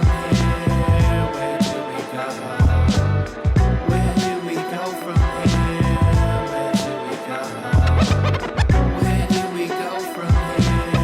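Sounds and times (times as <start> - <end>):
instrumental hip hop beat: 0.0 - 11.0.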